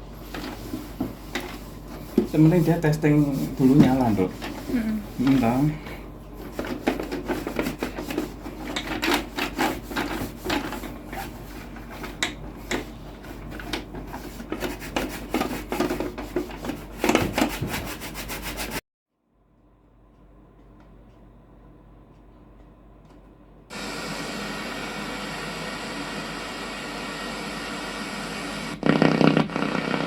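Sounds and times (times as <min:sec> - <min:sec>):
rubbing and scraping strokes: 0:01.6 - 0:05.2, 0:14.1 - 0:18.8
low steady hum: 0:19.3 - 0:23.8.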